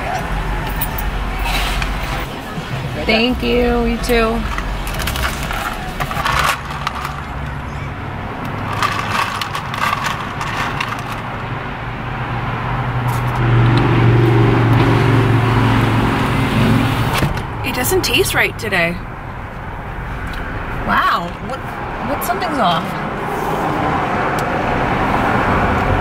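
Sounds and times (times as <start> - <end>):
car engine from inside cabin: 0.0 - 8.8
road noise: 0.0 - 26.0.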